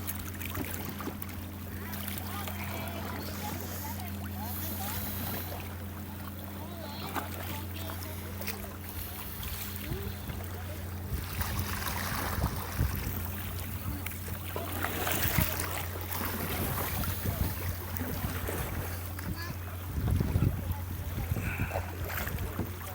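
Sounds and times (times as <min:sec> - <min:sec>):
steady low hum: 0:00.0 - 0:22.9
water splashing around paddle: 0:00.0 - 0:22.9
wind on microphone: 0:09.3 - 0:14.1, 0:16.4 - 0:22.8.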